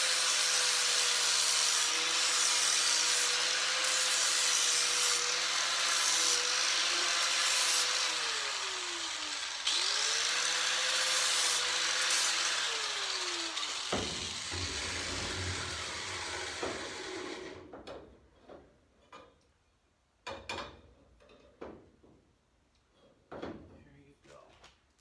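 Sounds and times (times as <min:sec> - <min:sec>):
electric grinder grinding steel: 0:00.0 - 0:17.6.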